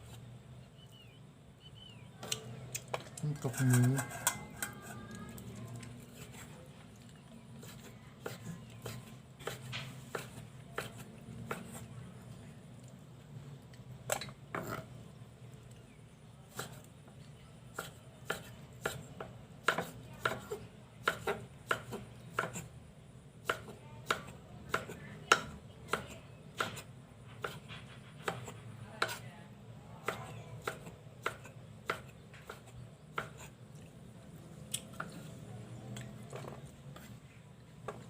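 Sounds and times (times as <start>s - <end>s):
knife chopping on cutting board: 7.6s - 11.8s, 16.5s - 16.8s, 17.7s - 22.7s, 23.4s - 29.2s, 30.0s - 33.5s.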